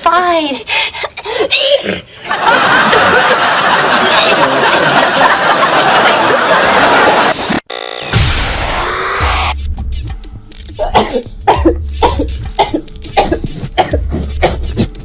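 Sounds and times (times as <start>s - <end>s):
studio audience laughing: 2.2s - 7.5s.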